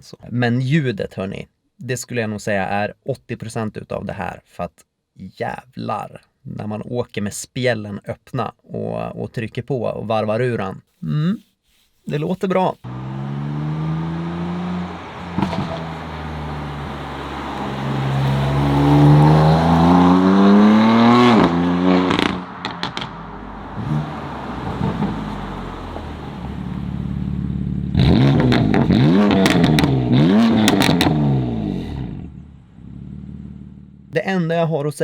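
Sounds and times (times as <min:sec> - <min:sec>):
car engine revving under load: 0:12.8 - 0:34.1
exhaust cracks: 0:12.8 - 0:34.2.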